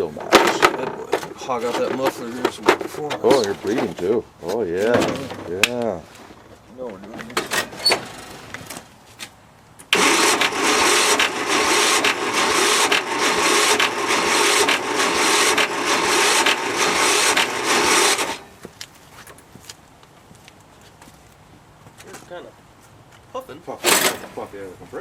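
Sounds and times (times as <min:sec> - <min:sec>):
engine cranking on electric starter: 0:09.9 - 0:18.5, 0:23.8 - 0:24.4.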